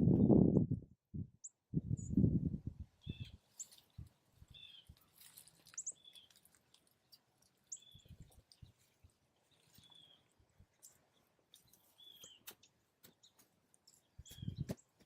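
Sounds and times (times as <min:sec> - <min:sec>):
small birds chirping: 0:03.0 - 0:15.0.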